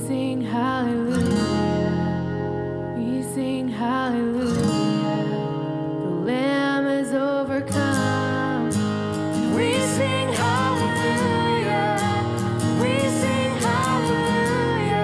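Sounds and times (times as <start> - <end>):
acoustic guitar strumming: 0.0 - 15.0
person singing: 3.0 - 15.0.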